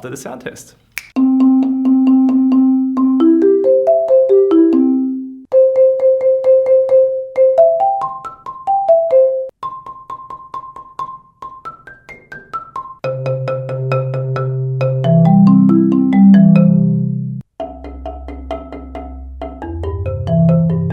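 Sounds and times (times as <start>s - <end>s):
marimba notes with yarn mallets: 1.2s - 20.9s
low marimba roll: 13.0s - 20.9s.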